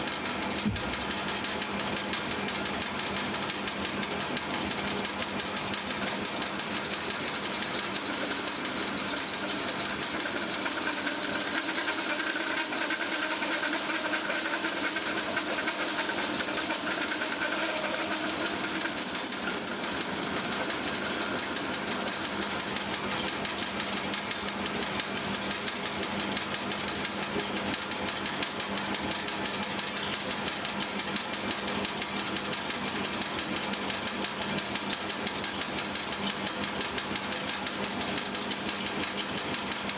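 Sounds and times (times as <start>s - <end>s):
lathe motor hum: 2.3s - 27.5s.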